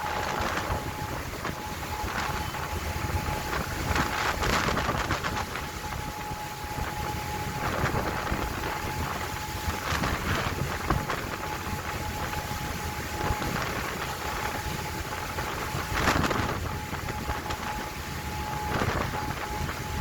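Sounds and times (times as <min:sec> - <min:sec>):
boat engine rumble: 0:00.0 - 0:20.0
faint steady whine: 0:00.0 - 0:20.0
wind buffeting microphone: 0:00.0 - 0:20.0.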